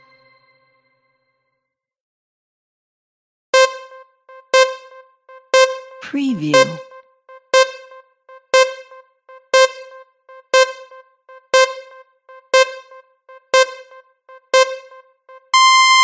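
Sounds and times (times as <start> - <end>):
electronic countdown tone: 3.6 - 16.0.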